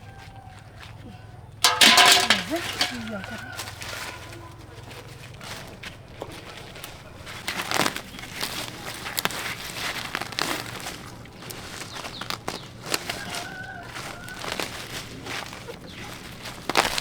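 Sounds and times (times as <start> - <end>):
leaves and stems rustling: 1.6 - 17.0.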